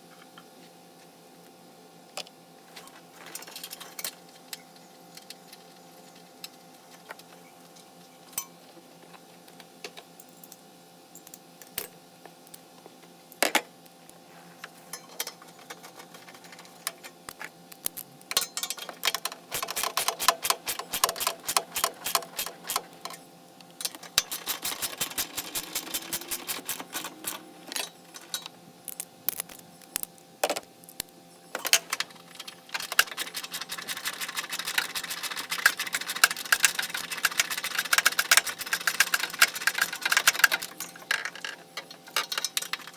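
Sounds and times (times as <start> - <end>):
ratchet wrench clicking: 19.5 - 22.9, 24.2 - 27.4, 32.8 - 40.8.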